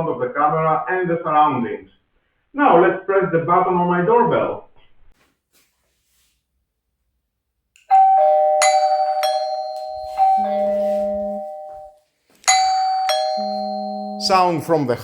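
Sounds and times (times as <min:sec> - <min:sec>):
electronic doorbell chime: 0:07.9 - 0:15.0.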